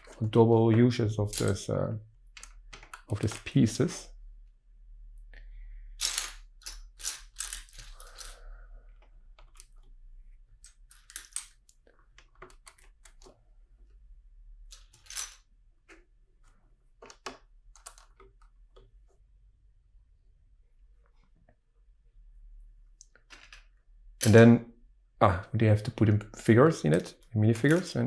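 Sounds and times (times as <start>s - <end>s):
plastic toy bricks clicking: 6.0s - 8.4s.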